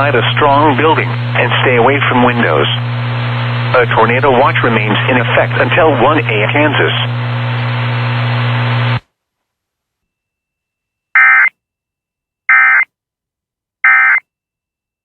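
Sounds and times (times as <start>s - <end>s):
broadcast audio hum: 0.0s - 9.0s
warbling digital data tones: 13.9s - 14.2s.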